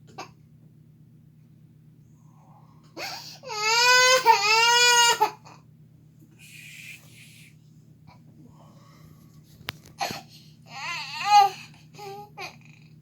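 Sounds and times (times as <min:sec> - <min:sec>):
baby crying: 0:03.0 - 0:05.4, 0:10.7 - 0:12.6
soft breathy sound: 0:06.4 - 0:07.6, 0:08.4 - 0:10.6.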